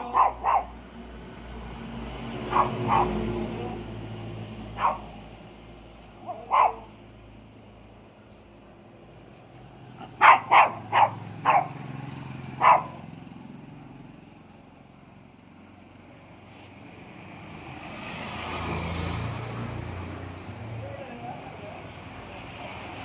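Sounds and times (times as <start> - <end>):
dog barking: 0.0 - 0.8, 2.4 - 3.9, 4.7 - 5.3, 6.2 - 7.0, 10.0 - 13.2
vehicle passing: 0.0 - 7.7, 8.8 - 23.0.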